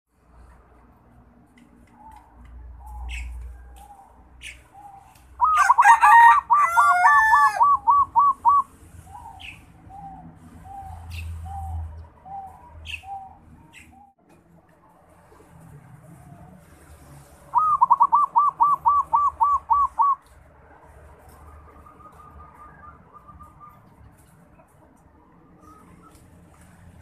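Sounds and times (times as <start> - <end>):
dove cooing: 4.7 - 14.1, 17.5 - 20.2
high bird chirps: 7.6 - 14.2, 17.5 - 20.3.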